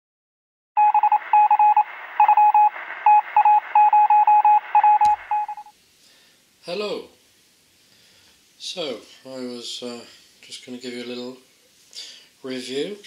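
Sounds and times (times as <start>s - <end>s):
morse code beeping tone: 0.8s - 5.7s
radio hiss: 1.1s - 5.4s.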